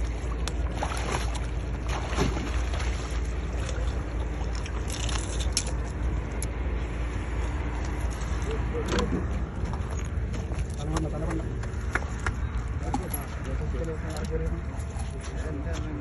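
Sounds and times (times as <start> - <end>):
sea sloshing against breakwater: 0.0 - 5.9.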